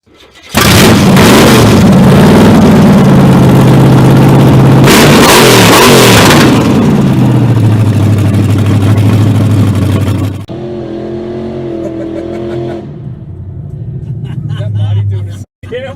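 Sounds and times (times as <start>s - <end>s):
car engine revving at idle: 0.5s - 10.5s.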